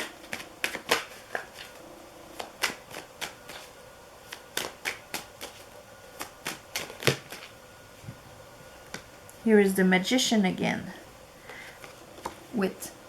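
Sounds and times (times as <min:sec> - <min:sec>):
cards snapping and tapping: 0:00.0 - 0:03.7, 0:04.3 - 0:07.5.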